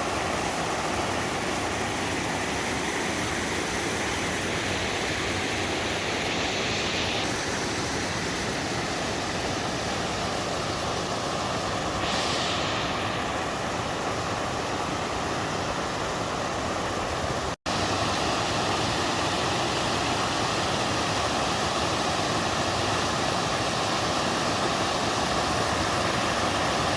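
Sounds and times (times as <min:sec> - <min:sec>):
waterfall rushing: 0:00.0 - 0:17.1.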